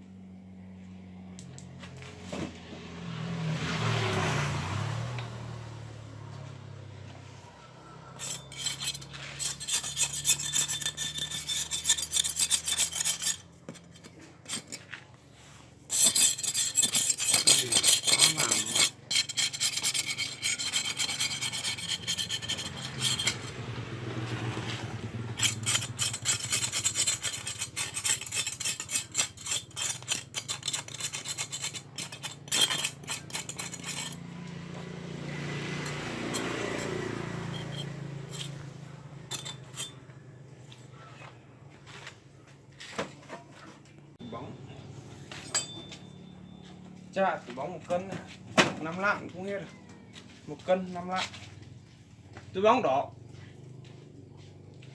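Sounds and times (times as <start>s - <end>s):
rapid rasping and scraping: 7.7s - 43.8s.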